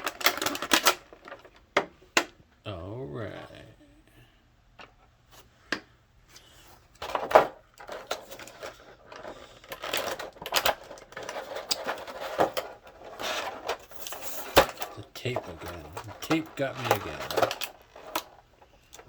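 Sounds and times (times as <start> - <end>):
plastic packaging crinkling: 0.0 - 1.6, 7.3 - 18.6
plastic packaging clicks: 0.0 - 2.3, 13.4 - 19.0.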